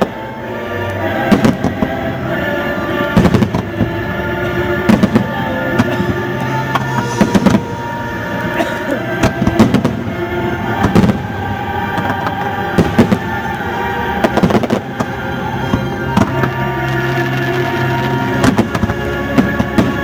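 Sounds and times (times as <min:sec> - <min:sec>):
orchestral music: 0:00.0 - 0:20.0
fireworks bangs and pops: 0:01.2 - 0:02.0, 0:03.1 - 0:08.0, 0:09.2 - 0:20.0.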